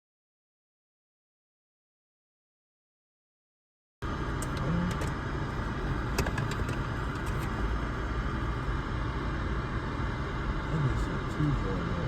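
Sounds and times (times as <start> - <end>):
car engine idling: 4.0 - 12.0.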